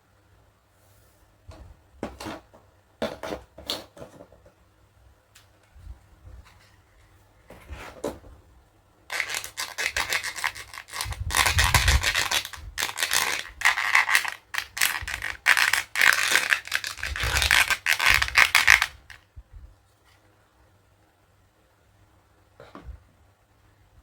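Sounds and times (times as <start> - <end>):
toy tools scraping and rubbing: 9.1 - 19.2.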